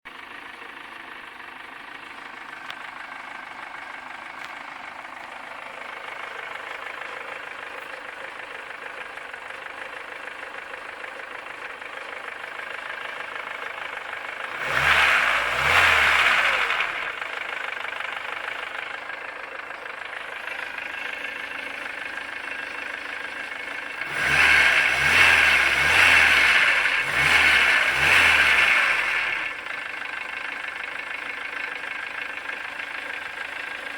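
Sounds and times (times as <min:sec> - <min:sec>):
car engine idling with a knock: 0:00.1 - 0:12.8.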